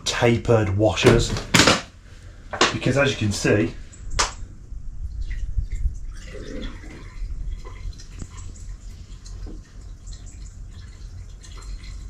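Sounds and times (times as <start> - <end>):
water dripping from joint: 3.9 - 12.0
water trickling in pipe: 5.0 - 12.0.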